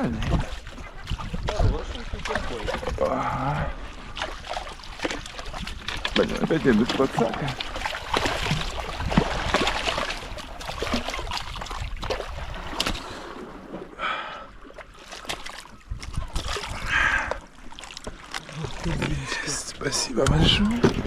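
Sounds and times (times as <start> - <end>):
sea water splashing: 0.0 - 21.0.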